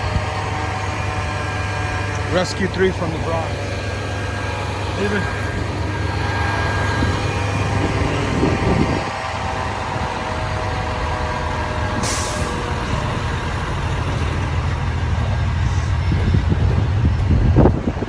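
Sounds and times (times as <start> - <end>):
heavy diesel engine running: 0.0 - 18.0
air brake hiss: 11.5 - 14.7.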